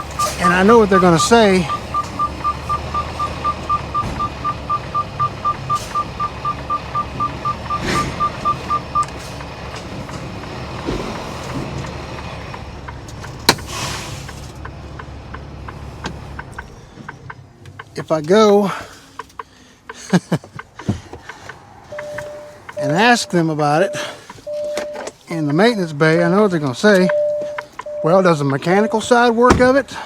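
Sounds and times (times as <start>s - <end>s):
rapid short high beeps: 0.0s - 6.6s.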